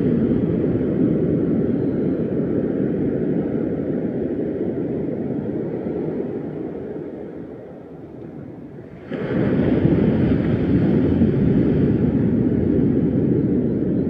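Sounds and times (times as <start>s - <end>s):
wind on microphone: 0.0s - 14.0s
ocean surf: 8.6s - 14.0s.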